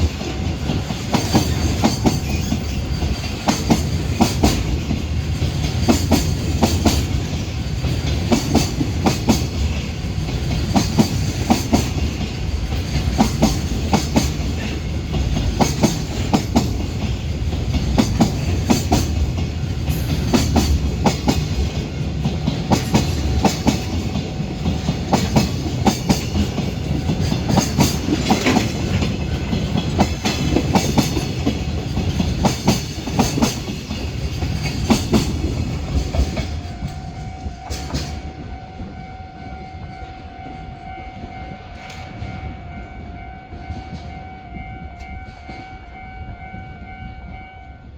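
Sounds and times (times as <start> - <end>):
wheels clacking over rail joints: 0.0 - 38.4
freight train rumble: 0.0 - 47.9.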